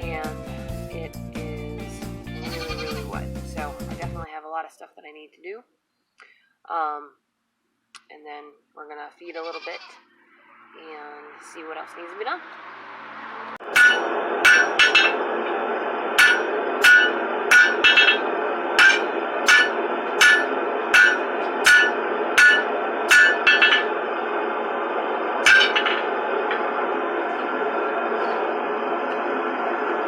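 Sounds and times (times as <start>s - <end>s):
steady rushing noise: 10.3s - 30.0s
hammer striking iron on anvil: 13.6s - 15.5s, 16.2s - 24.1s, 25.4s - 26.8s.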